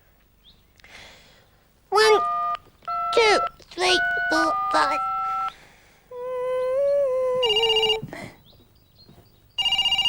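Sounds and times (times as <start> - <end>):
telephone ringing: 2.0 - 5.6, 7.4 - 8.0, 9.6 - 10.0
keypad tone: 2.1 - 5.5
person humming: 6.1 - 8.2.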